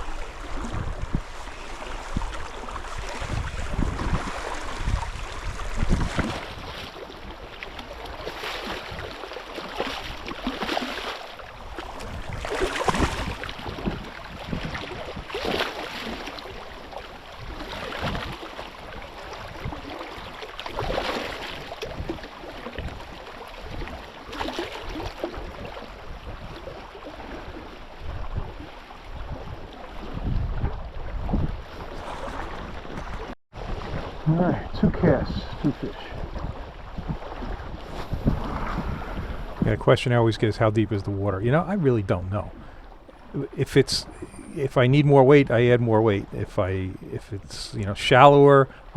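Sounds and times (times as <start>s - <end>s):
wind buffeting microphone: 0.0s - 9.3s, 11.4s - 48.9s
water sloshing against boat hull: 0.0s - 48.9s.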